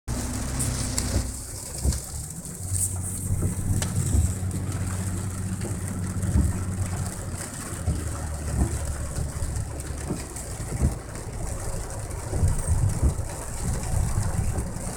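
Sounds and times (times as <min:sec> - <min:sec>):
heavy rain hissing: 0:00.1 - 0:14.9
short low knocks: 0:03.2 - 0:14.8.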